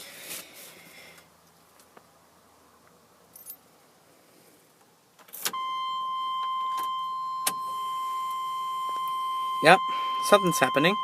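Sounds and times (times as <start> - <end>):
keys jingling: 3.3 - 3.6
high warning beep: 5.5 - 11.0.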